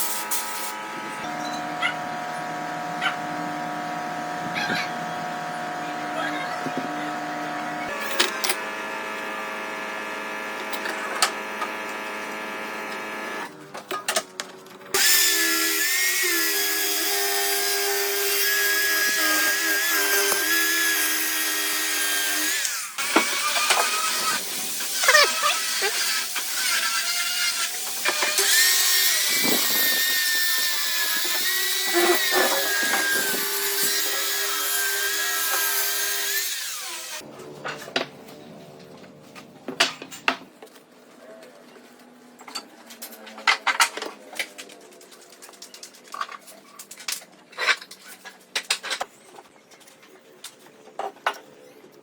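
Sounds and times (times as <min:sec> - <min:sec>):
power tool cutting wood: 0:00.0 - 0:13.6, 0:14.9 - 0:37.3.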